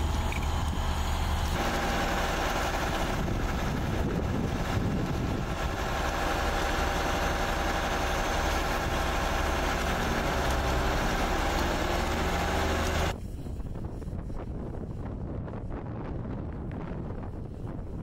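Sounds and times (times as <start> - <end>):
wind noise on microphone: 0.0 - 12.3, 13.1 - 18.0
fire engine idling: 0.0 - 13.2.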